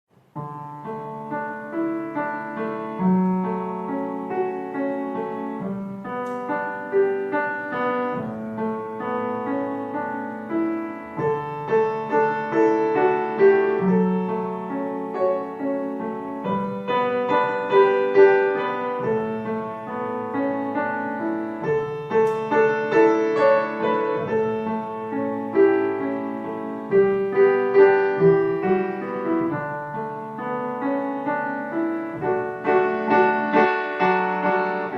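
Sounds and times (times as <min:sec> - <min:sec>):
solo piano music: 0:00.1 - 0:34.9.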